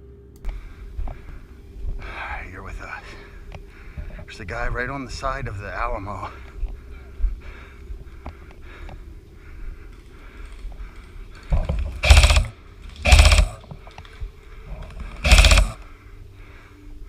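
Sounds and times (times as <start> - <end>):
airsoft rifle firing bursts: 11.6 - 13.6, 15.0 - 15.8.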